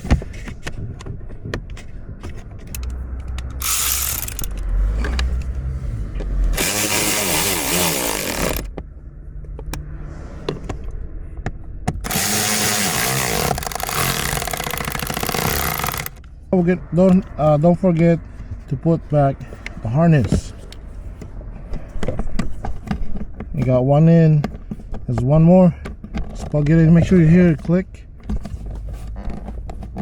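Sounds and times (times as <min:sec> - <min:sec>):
cordless power tool driving bolts: 0:03.6 - 0:05.6, 0:06.5 - 0:08.7, 0:12.0 - 0:16.2.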